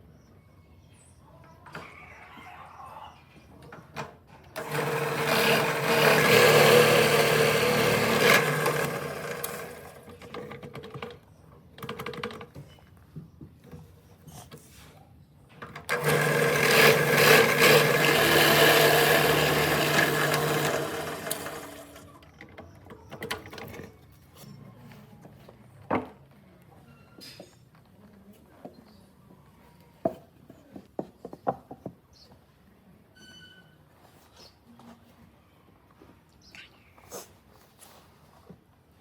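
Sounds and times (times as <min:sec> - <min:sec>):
electric power tool motor: 0:04.6 - 0:10.5, 0:15.8 - 0:22.1.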